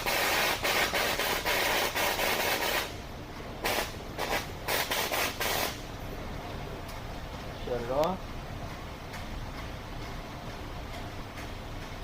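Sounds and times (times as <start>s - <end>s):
cutting torch hissing: 0.0s - 2.9s, 3.6s - 5.8s
short hissing bursts: 0.0s - 3.0s, 3.6s - 5.9s.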